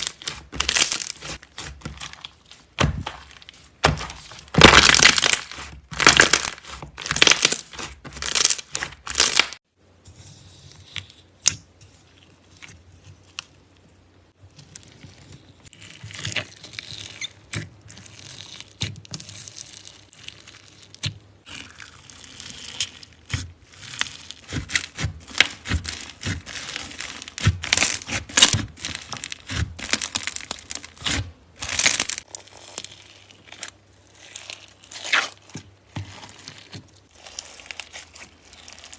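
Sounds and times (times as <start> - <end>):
slime squeezed by hand crackling: 23.7 - 38.9.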